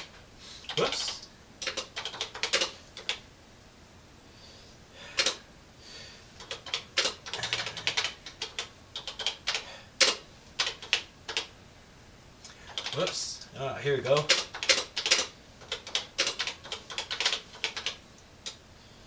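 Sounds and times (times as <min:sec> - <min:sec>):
keyboard keys clacking: 0:06.4 - 0:11.5.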